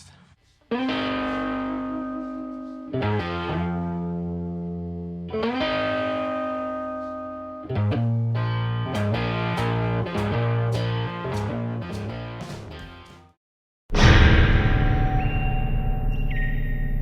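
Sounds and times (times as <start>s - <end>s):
distorted electric guitar chords: 0.8s - 13.2s.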